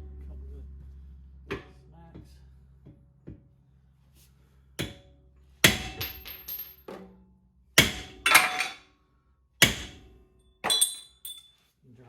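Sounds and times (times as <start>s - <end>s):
hammer striking metal: 7.8s - 8.8s, 9.6s - 10.0s.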